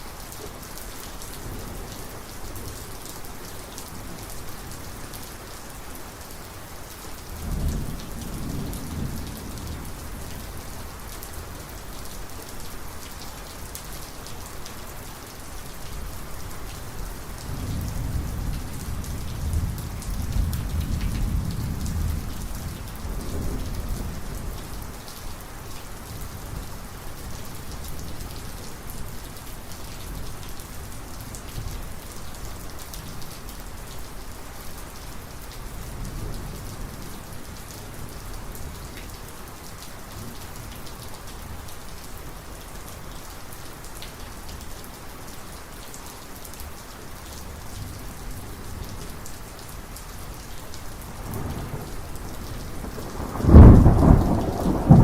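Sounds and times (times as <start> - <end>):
heavy rain: 0.0 - 55.0
rolling thunder: 51.2 - 55.0.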